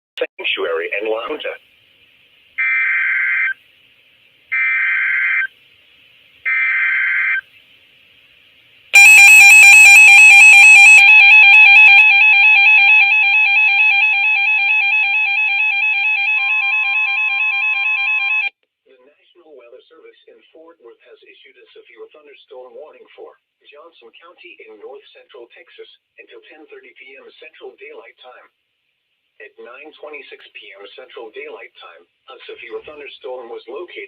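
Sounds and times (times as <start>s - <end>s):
buzzing digital data bursts: 9.0s - 12.1s
loud steady attention tone: 9.0s - 18.5s.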